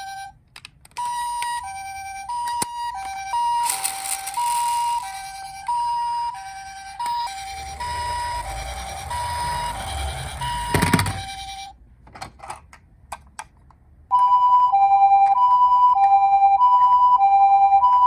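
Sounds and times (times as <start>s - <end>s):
toy two-tone siren: 0.0s - 0.4s, 1.0s - 11.8s, 14.2s - 18.0s
low rumble: 7.0s - 11.6s.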